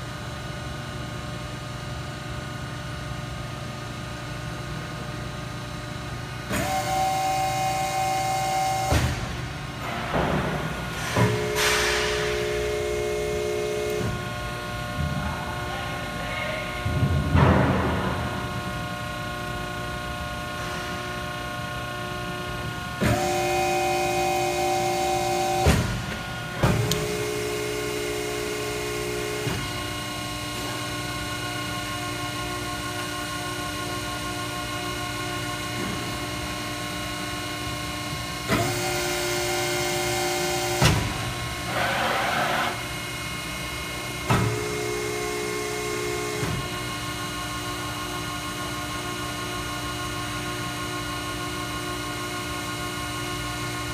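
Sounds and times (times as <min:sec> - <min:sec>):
hydraulic hum: 0:00.1 - 0:53.9
press brake whine: 0:06.3 - 0:15.0, 0:18.0 - 0:53.9.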